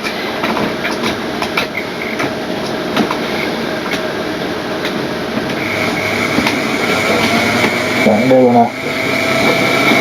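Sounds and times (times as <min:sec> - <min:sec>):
faint high motor whine: 0:04.4 - 0:10.0
wheels clicking on rail joints: 0:04.8 - 0:10.0
model train running: 0:05.4 - 0:10.0.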